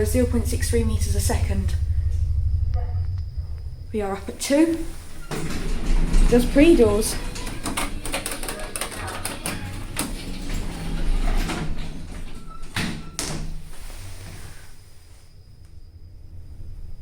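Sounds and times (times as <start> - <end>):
faint low hum: 0.0 - 13.5, 14.1 - 17.0
lift doors sliding: 4.0 - 15.2
rattle of clicks: 5.4 - 13.3.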